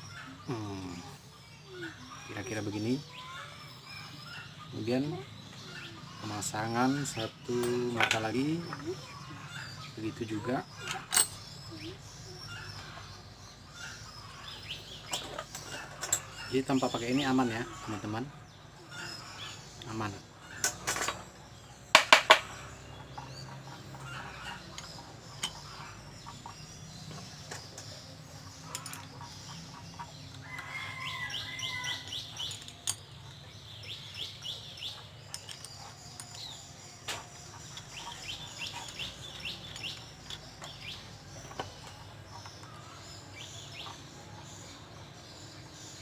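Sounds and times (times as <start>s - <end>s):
sharp knocks: 22.0s - 22.6s.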